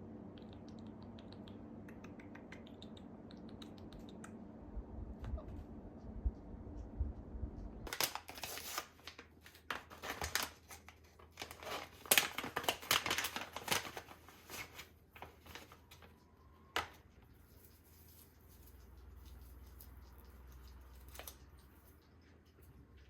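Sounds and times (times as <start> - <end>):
paper rustling and crinkling: 7.9 - 16.1.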